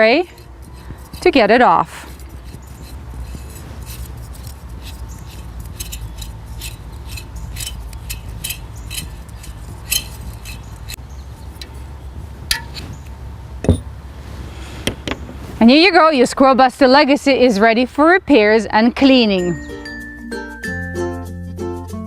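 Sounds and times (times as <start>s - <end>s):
steady low hum: 0.0s - 15.8s
plastic and metal parts clinking: 2.1s - 11.0s.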